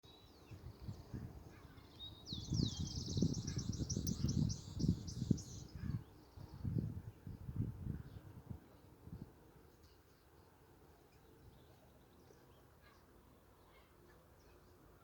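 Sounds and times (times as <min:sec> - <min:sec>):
songbird trilling: 0:01.9 - 0:06.0.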